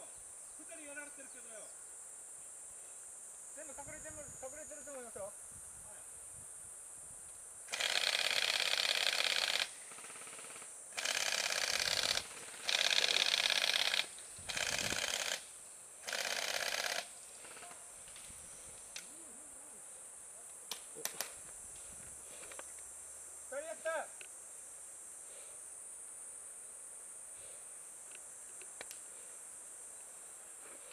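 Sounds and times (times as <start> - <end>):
high insect buzz: 0.0 - 30.9
airsoft rifle automatic bursts: 7.7 - 17.8
sharp single clicks: 20.5 - 21.4.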